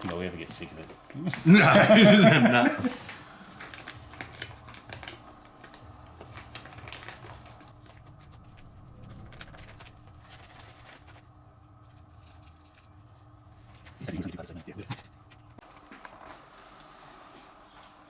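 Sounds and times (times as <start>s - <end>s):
low hum: 7.7s - 14.8s.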